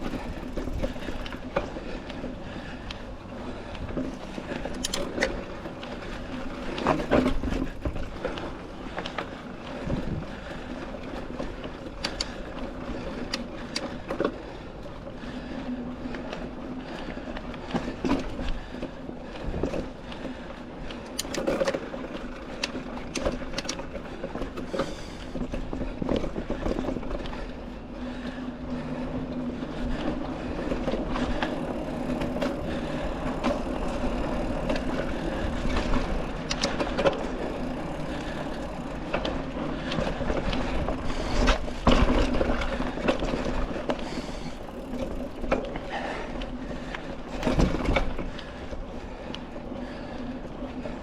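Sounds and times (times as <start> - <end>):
bike chain and frame rattling: 0.0 - 51.0
bike tyres rolling on dirt: 0.0 - 51.0.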